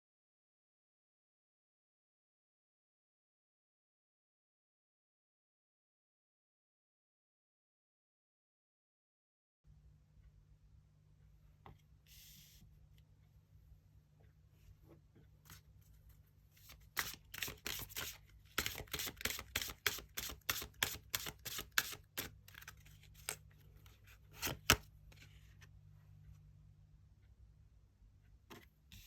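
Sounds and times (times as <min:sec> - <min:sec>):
cards clicking and slapping: 0:16.7 - 0:23.4.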